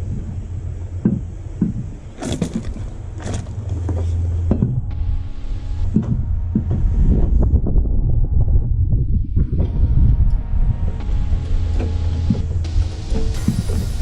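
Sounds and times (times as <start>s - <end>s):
steady low rumble: 0.0s - 14.0s
car wheel knocking against hub: 1.0s - 4.8s
brief whirring hum: 1.6s - 14.0s.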